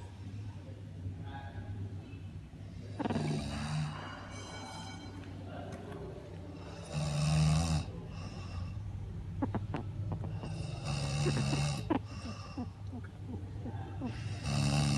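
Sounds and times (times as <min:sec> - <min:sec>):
quiet breathing: 0:00.0 - 0:09.4, 0:10.0 - 0:14.9
person snoring loudly: 0:03.0 - 0:04.1, 0:06.7 - 0:08.5, 0:10.2 - 0:12.8, 0:14.0 - 0:14.9.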